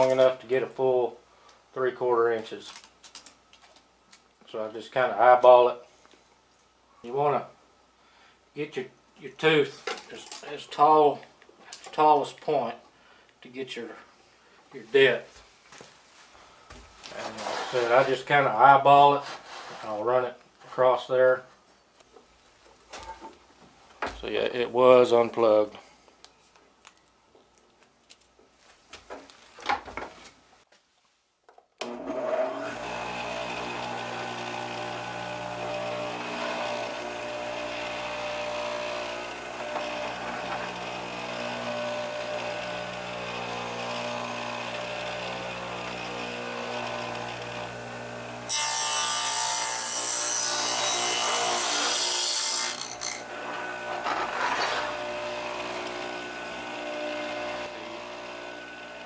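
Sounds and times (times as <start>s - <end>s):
saw blade cutting board: 17.1s - 18.3s, 32.5s - 59.0s
table saw running: 31.8s - 59.0s.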